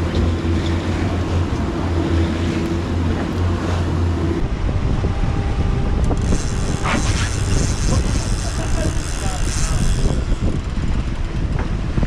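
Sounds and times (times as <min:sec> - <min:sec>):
water rushing: 0:00.0 - 0:04.6
boat motor humming: 0:00.0 - 0:12.0
wind buffeting microphone: 0:00.0 - 0:12.0.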